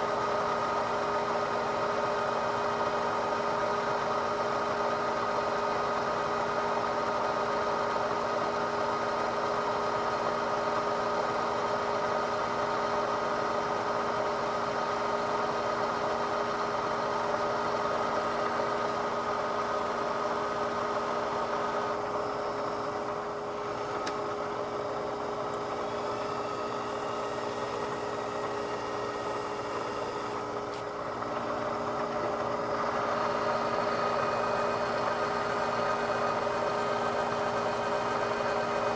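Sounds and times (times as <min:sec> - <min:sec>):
metal lathe humming: 0:19.3 - 0:38.9.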